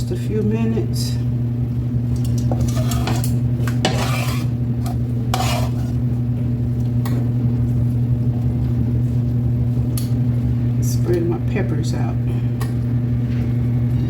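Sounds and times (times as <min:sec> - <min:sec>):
low electrical hum: 0:00.0 - 0:14.0
utensil scraping and clinking on pan: 0:02.3 - 0:06.0.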